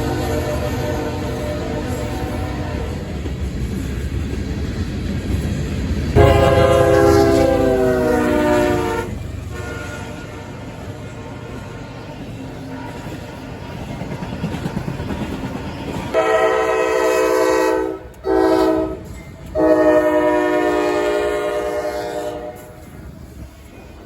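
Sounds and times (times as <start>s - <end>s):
locomotive air horn chord: 0.0s - 3.1s, 6.2s - 12.0s, 16.1s - 22.8s
freight train rumbling on rails: 0.0s - 24.0s.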